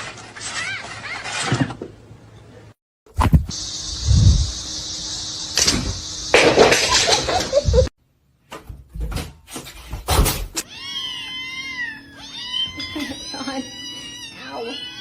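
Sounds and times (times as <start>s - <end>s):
cat meowing: 10.6s - 15.0s.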